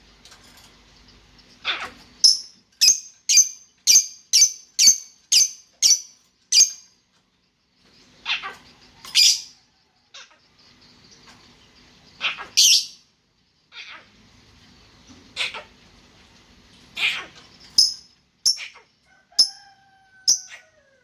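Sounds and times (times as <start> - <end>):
lovebird chirping: 1.0 - 6.9, 12.1 - 13.0, 17.0 - 18.8, 20.3 - 20.6.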